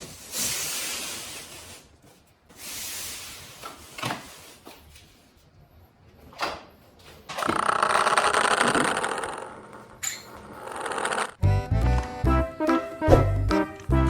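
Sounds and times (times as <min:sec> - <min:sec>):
sliding rubbing hisses: 0:00.0 - 0:04.6.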